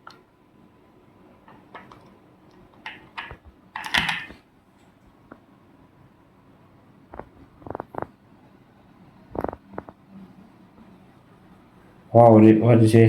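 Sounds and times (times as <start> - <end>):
plastic toys clicking and knocking: 2.8 - 4.4.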